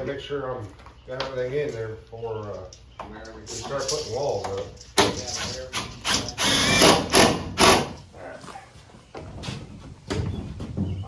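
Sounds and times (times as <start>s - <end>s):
quiet work noise: 0.0s - 11.0s
power tool bursts: 5.4s - 8.0s.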